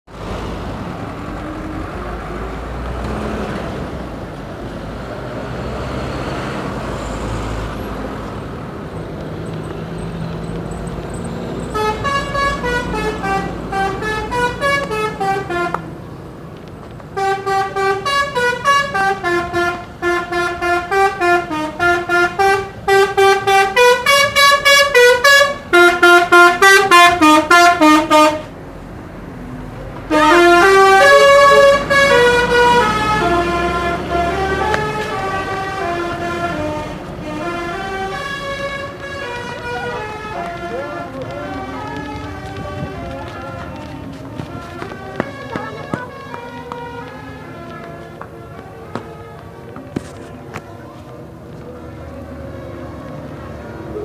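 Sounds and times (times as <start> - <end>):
bus engine rumbling: 0.0 - 54.0
multi-tone horn melody: 11.7 - 15.9, 17.2 - 28.5, 30.1 - 50.3.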